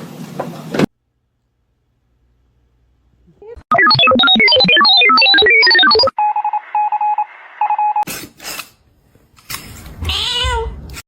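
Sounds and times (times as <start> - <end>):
electronic phone melody: 3.7 - 8.0
pulsed electronic beeping: 3.7 - 8.0
cat meowing: 10.0 - 10.8.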